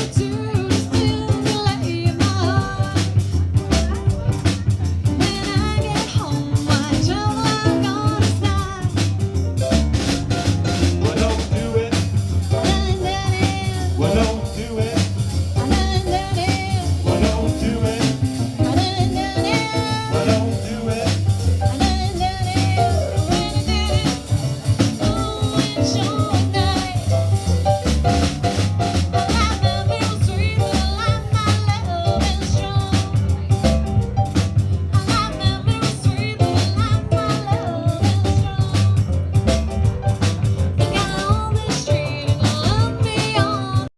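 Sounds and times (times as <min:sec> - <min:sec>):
drum kit beat: 0:00.0 - 0:43.9
live band playing jazz: 0:00.0 - 0:43.9
person singing: 0:11.0 - 0:27.4.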